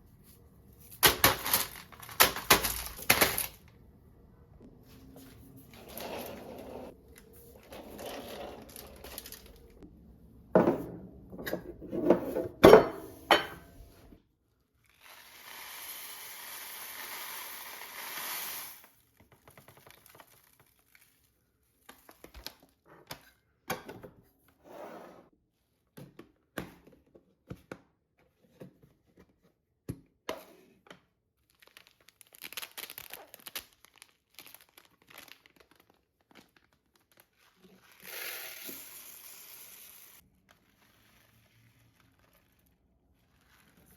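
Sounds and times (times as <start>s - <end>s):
packaging crinkling: 8.6s - 9.8s, 31.5s - 38.0s
dishes clinking and knocking: 10.6s - 13.8s.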